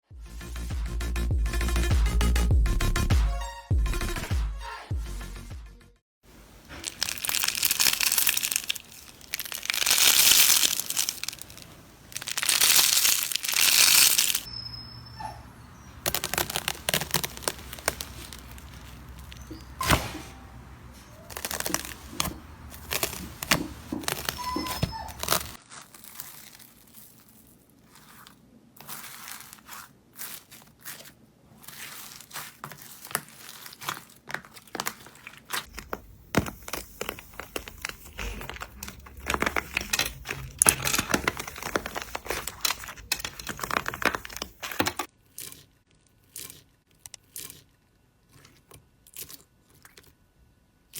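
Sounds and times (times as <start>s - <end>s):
slime squeezed by hand: 6.7s - 14.5s, 15.8s - 27.3s.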